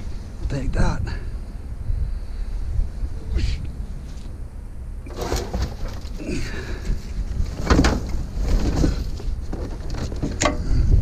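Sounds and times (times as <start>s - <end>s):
scrap metal knocking and clattering: 5.1s - 6.4s, 7.4s - 10.8s
short scraping: 5.1s - 6.6s.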